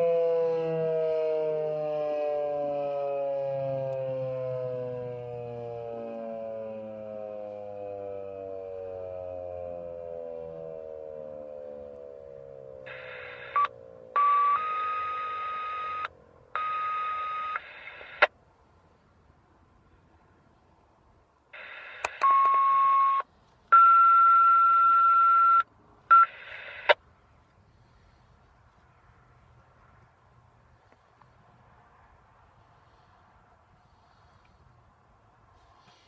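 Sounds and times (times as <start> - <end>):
siren winding down: 0.0 - 18.3
steady beep tone: 12.9 - 17.6, 22.2 - 23.2
radio static bursts: 12.9 - 18.3, 21.6 - 22.9, 25.4 - 27.0.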